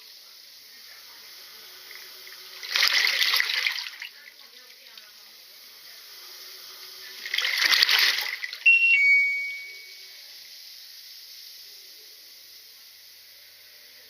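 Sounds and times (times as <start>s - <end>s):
faint steady hiss: 0.0s - 14.0s
water rushing: 1.8s - 4.4s, 7.0s - 8.7s
two-note electronic beep: 8.6s - 10.1s.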